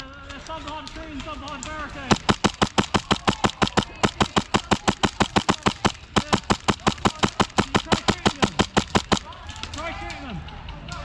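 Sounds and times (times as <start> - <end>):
airsoft gun firing full-auto: 2.1 - 9.4.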